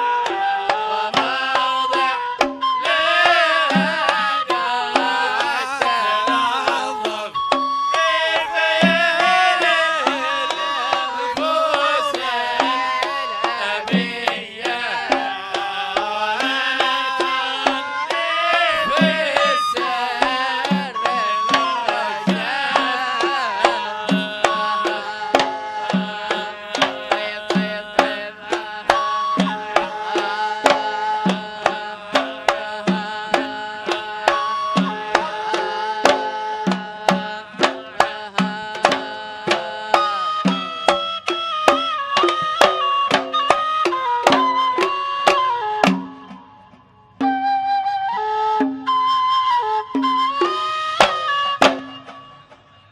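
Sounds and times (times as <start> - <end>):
hand drum beat: 0.2 - 47.4, 50.0 - 52.2
sharp percussion strikes: 0.2 - 47.4, 50.0 - 52.9
ornamented melody line: 40.1 - 52.9.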